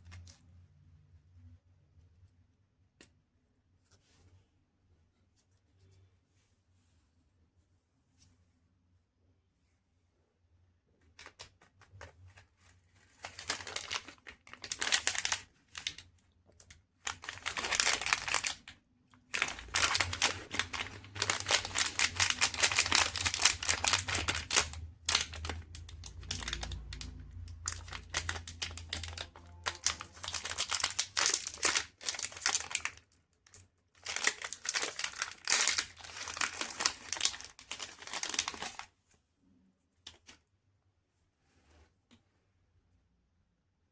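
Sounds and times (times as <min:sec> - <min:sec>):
wrapper crinkling and tearing: 0:12.3 - 0:38.9.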